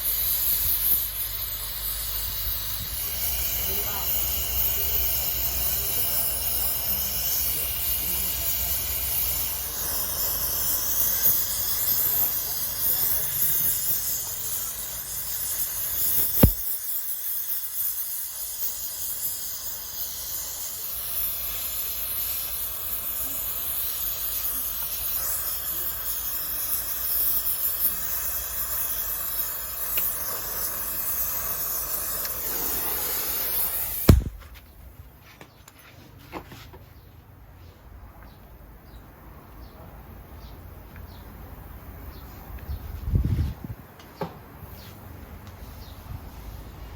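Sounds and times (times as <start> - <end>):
welding torch hissing: 0.0 - 34.7
sharp click: 16.2 - 16.7, 34.1 - 34.6.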